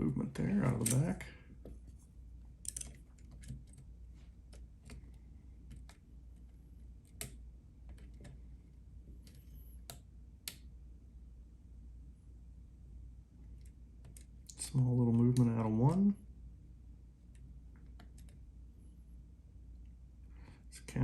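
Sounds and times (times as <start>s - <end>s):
low steady hum: 0.0s - 21.0s
lock pick clicking in lock: 2.6s - 3.5s.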